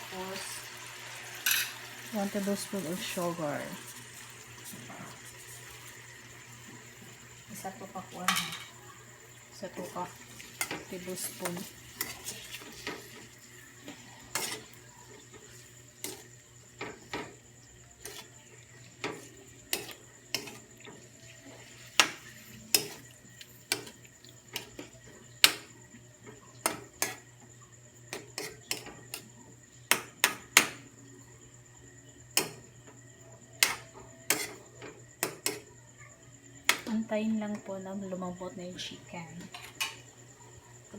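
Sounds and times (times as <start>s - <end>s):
metal utensil clinking on pan: 1.4s - 1.8s, 8.2s - 8.8s.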